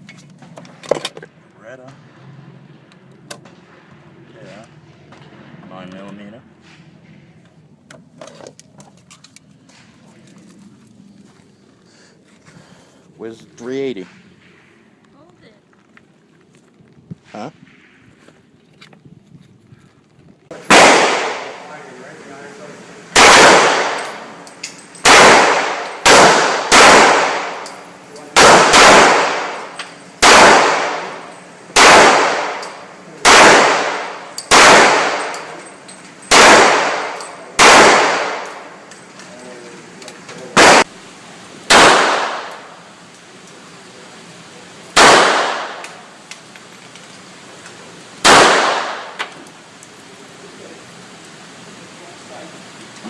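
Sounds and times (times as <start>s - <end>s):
handgun shots echoing: 20.7s - 21.8s, 23.2s - 35.7s, 36.3s - 38.8s, 40.5s - 40.8s, 41.7s - 42.8s, 45.0s - 46.5s, 48.2s - 49.5s.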